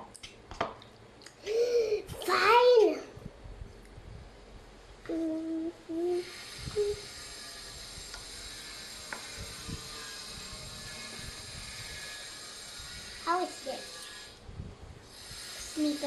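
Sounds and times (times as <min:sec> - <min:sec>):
person humming: 0:05.1 - 0:07.1.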